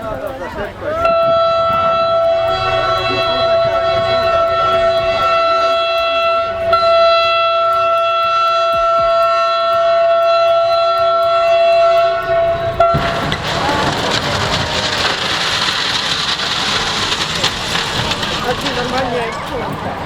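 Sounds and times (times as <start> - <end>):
train air horn: 1.0 - 15.0.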